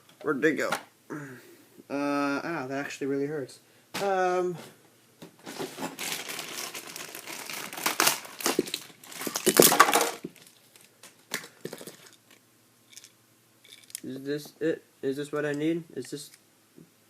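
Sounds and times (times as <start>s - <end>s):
plastic packaging crinkling: 5.5s - 14.1s.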